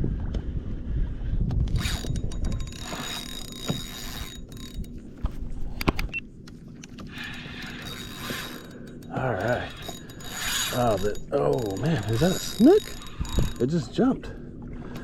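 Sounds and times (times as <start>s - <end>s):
fishing reel being cranked: 1.7s - 5.2s, 7.0s - 14.0s.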